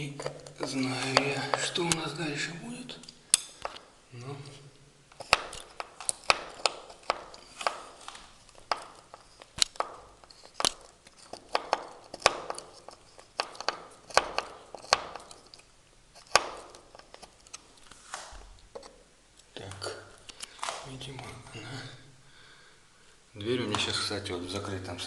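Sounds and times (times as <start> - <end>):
screwdriver clicking and scraping: 5.1 - 18.0, 18.6 - 19.0.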